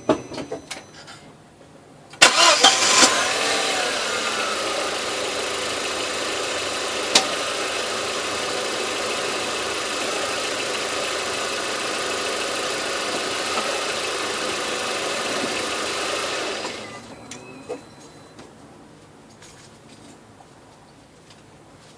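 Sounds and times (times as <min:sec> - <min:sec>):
car engine running: 0:02.2 - 0:18.3.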